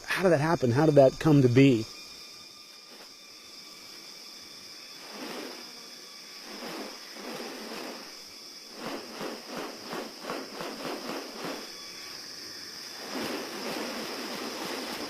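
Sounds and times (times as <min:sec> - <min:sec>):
high-pitched insect drone: 0:00.0 - 0:15.0
short noisy pulses: 0:04.9 - 0:12.2, 0:12.9 - 0:15.0.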